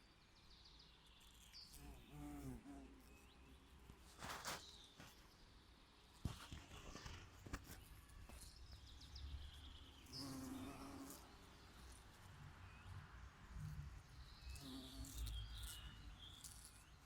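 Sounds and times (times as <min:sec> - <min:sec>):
outdoor nature ambience: 0:00.0 - 0:17.0.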